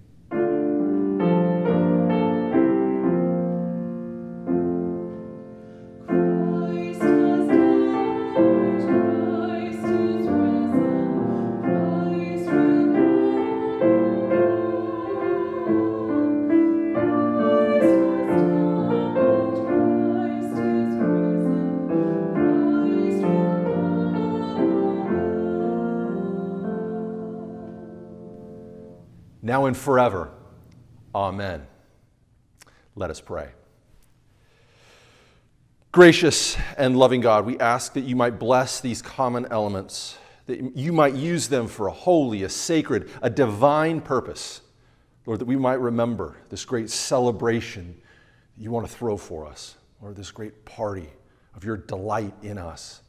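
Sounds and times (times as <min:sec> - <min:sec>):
piano chords: 0:00.0 - 0:29.4
singing: 0:06.4 - 0:11.2.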